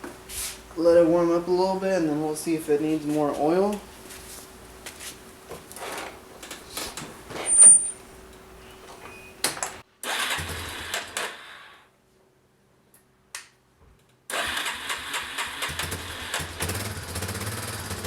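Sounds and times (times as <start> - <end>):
quad bike engine starting and idling: 10.0 - 11.6, 14.3 - 18.0.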